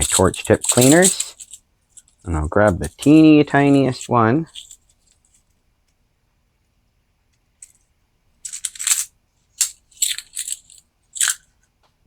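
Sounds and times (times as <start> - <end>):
metal wires clinking against case: 0.0 - 5.4, 8.4 - 11.5.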